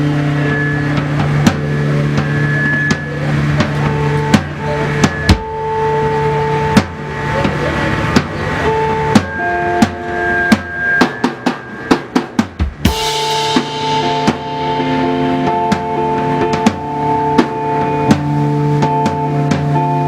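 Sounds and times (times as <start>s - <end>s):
band playing a beat: 0.0s - 20.0s
held instrument notes: 0.0s - 20.0s
sharp drum hits: 9.1s - 19.7s.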